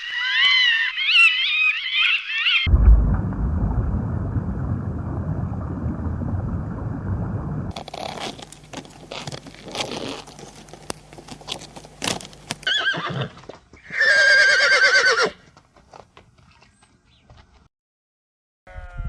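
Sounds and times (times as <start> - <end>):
horse hooves clip-clopping: 7.7 - 17.7
horse whinnying: 12.6 - 15.4.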